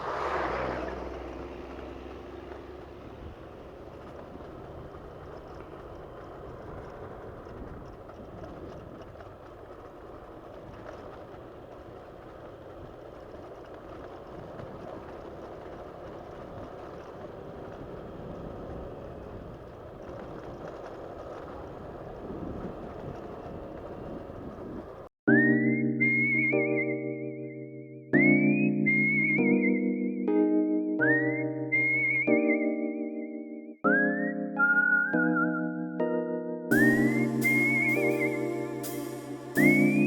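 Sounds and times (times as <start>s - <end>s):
motorcycle engine and wind noise: 0.0s - 25.1s
loud music with whistle tone: 25.3s - 27.0s, 28.2s - 29.9s, 31.1s - 32.8s, 33.9s - 35.8s, 36.8s - 40.0s.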